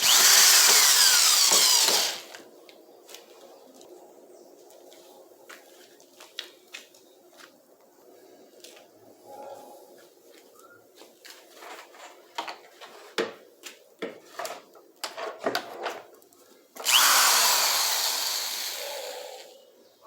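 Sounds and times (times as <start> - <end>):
power tool running: 0.0 - 2.4, 16.8 - 19.5.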